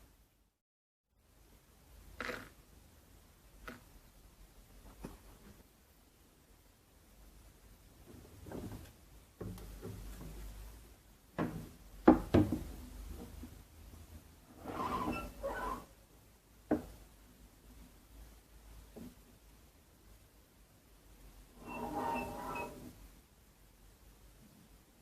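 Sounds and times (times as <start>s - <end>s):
rubbing or scraping: 14.5s - 16.0s, 21.6s - 23.0s.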